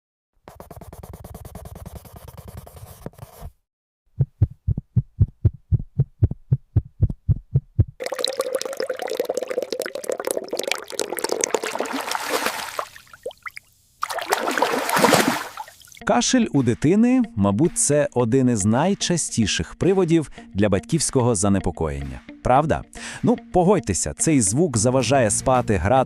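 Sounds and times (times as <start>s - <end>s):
rapid low thumps: 4.1s - 8.0s
crackling bubbling noise: 8.0s - 12.2s.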